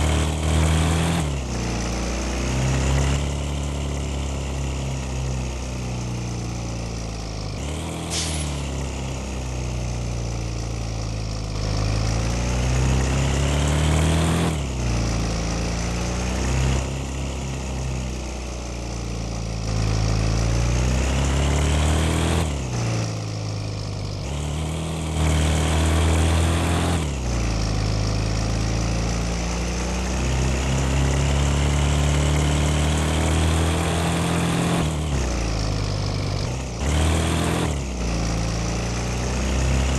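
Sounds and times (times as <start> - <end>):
bus engine accelerating: 0.0 - 39.9.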